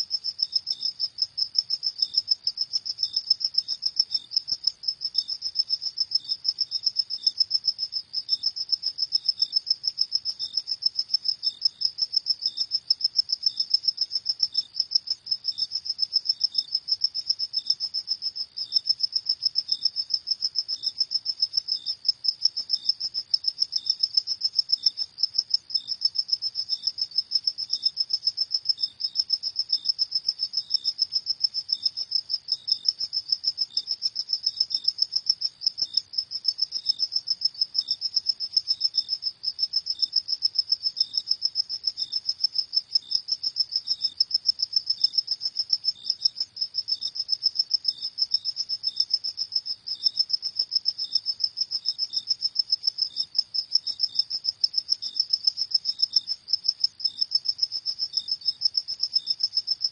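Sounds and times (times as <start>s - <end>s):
crickets chirping: 0.0s - 59.9s.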